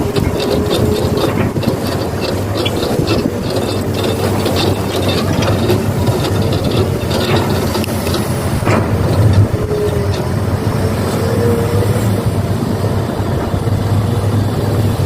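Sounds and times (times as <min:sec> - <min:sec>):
sharp clicks: 0:00.0 - 0:10.3
model excavators droning: 0:00.0 - 0:15.0.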